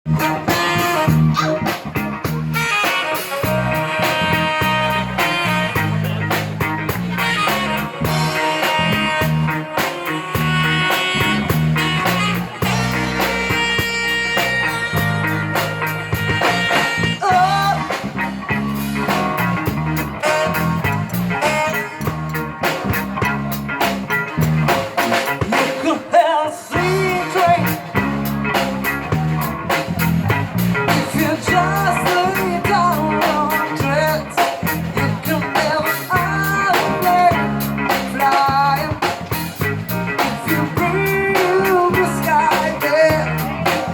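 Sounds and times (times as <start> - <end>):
bass guitar: 0.0 - 43.9
drum kit: 0.1 - 43.9
electric guitar: 0.1 - 43.9
person singing: 7.5 - 18.9, 25.4 - 29.4, 30.9 - 39.6, 40.2 - 43.9.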